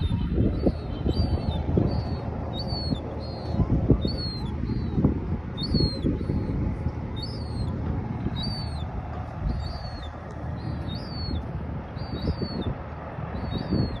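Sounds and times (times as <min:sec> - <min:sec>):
gull squeaking: 0:00.0 - 0:06.6, 0:07.2 - 0:07.7, 0:08.3 - 0:11.4, 0:12.0 - 0:12.7
low rumbling noise: 0:00.0 - 0:14.0.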